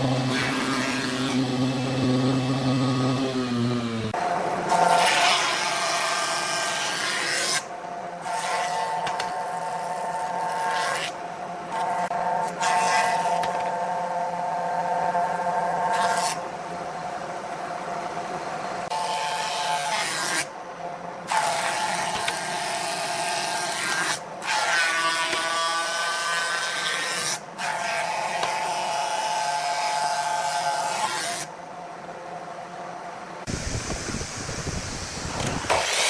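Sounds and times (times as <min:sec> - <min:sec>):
wood lathe whining: 0:00.0 - 0:06.3
turning tool cutting wood: 0:35.3 - 0:36.0.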